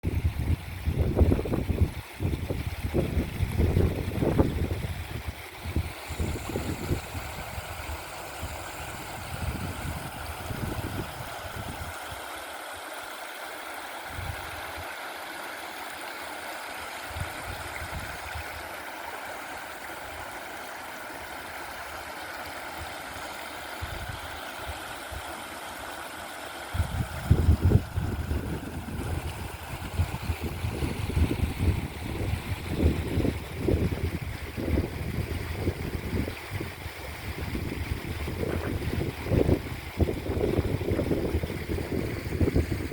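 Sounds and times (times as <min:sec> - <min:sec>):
wind buffeting microphone: 0:00.0 - 0:11.9, 0:14.1 - 0:14.6, 0:17.1 - 0:18.6, 0:23.8 - 0:24.3, 0:26.7 - 0:42.9
stream water flowing: 0:00.0 - 0:42.9.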